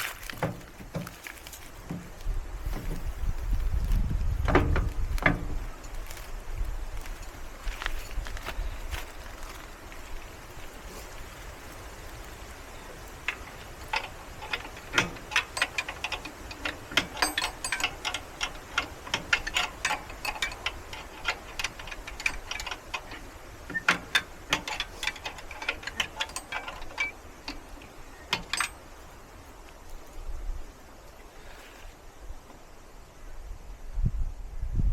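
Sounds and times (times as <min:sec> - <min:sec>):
spanner clicking on metal bolt: 0:13.3 - 0:27.6.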